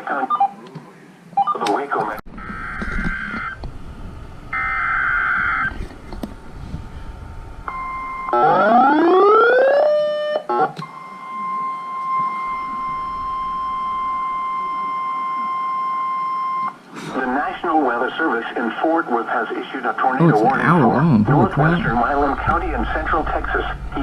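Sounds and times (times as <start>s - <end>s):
steady warning alarm tone: 2.4s - 5.8s, 6.9s - 17.6s, 20.4s - 24.0s.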